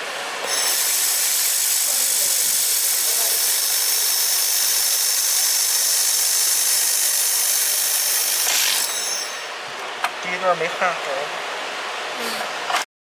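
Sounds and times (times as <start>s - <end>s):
laser welder gas hiss: 0.5s - 9.4s.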